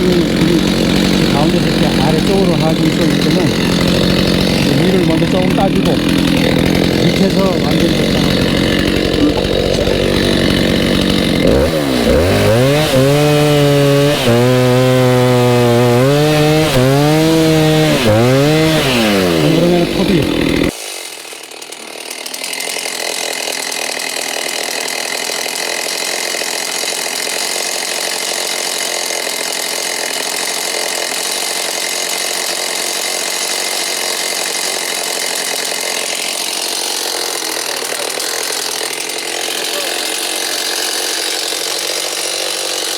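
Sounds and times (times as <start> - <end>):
chainsaw cutting log: 0.0 - 42.9.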